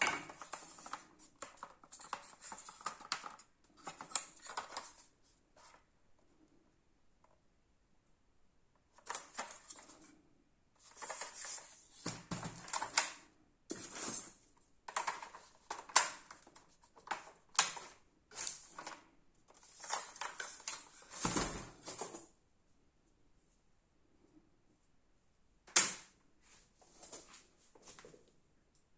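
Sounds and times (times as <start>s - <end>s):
toy gun being handled: 0.1s - 5.8s, 14.9s - 19.0s.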